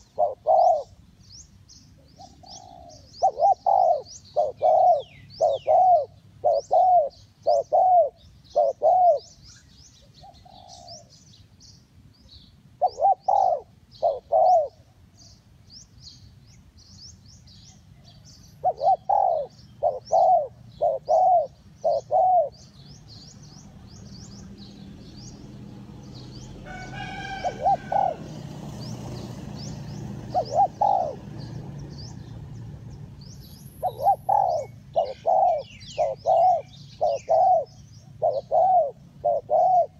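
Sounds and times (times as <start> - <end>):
doves cooing: 0.0 - 1.0, 2.0 - 9.4, 10.2 - 11.1, 12.8 - 15.0, 18.0 - 23.1, 26.4 - 32.4, 33.6 - 39.9
small birds chirping: 0.0 - 39.9.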